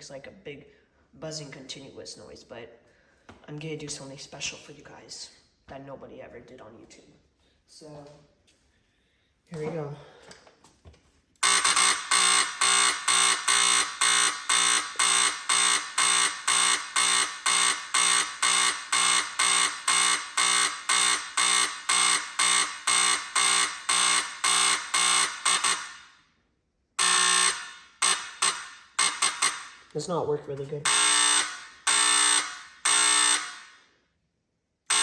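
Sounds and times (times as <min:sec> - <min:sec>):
pulsing fire alarm buzz: 0:11.4 - 0:26.2, 0:27.0 - 0:29.9, 0:30.8 - 0:34.0.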